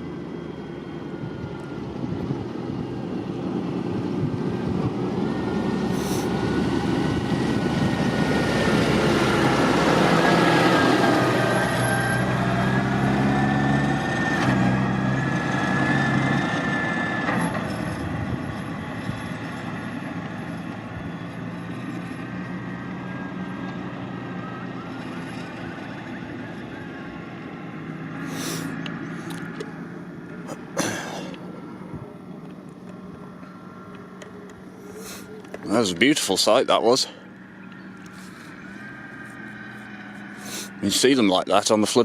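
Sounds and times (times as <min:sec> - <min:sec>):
vehicle engine running: 0:00.0 - 0:42.0.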